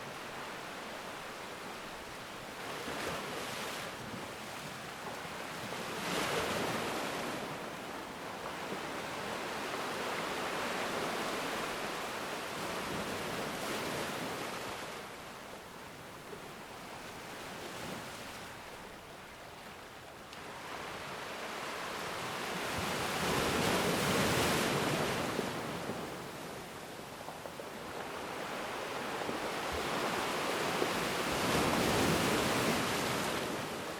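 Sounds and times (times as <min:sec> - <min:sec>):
ocean waves roaring: 0:20.4 - 0:33.9.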